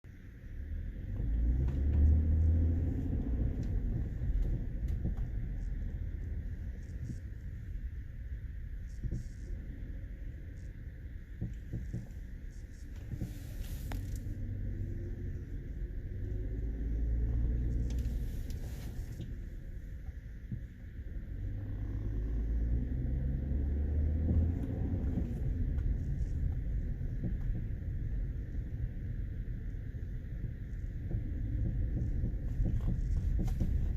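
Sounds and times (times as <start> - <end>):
low road rumble: 0.0 - 33.9
suspension popping: 0.1 - 33.9
faint suspension pops: 11.3 - 16.4, 24.0 - 28.8, 30.4 - 33.9.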